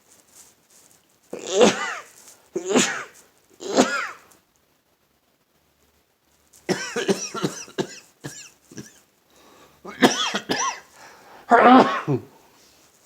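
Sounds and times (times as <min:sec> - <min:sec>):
person sneezing and coughing: 0:01.4 - 0:04.3, 0:06.7 - 0:09.0, 0:09.9 - 0:10.9, 0:11.5 - 0:12.3.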